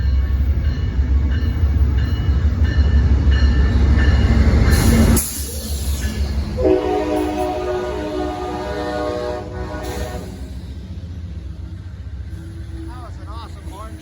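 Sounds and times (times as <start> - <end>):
diesel locomotive rumble: 0.0 - 14.0
locomotive air horn: 6.6 - 10.6.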